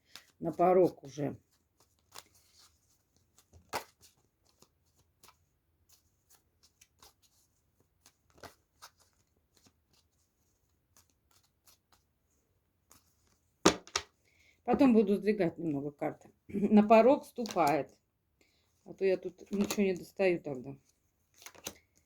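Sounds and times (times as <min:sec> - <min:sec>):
cards snapping: 0:13.7 - 0:14.1, 0:21.4 - 0:21.8
cards clicking and slapping on table: 0:13.7 - 0:14.2, 0:19.5 - 0:19.9, 0:21.4 - 0:21.8.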